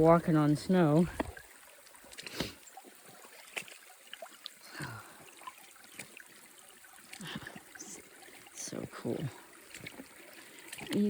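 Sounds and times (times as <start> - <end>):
trickle of running water: 0.0 - 11.0
boots splashing through creek: 2.1 - 4.6.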